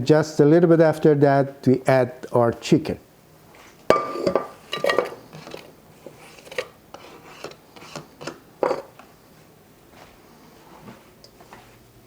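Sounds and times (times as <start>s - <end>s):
kitchen pans and utensils clinking: 3.9s - 9.0s.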